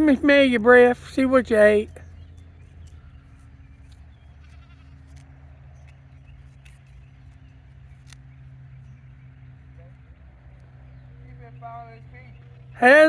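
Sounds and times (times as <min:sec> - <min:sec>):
steady low hum: 0:00.0 - 0:13.0
farm animal bleating faintly: 0:04.2 - 0:05.3.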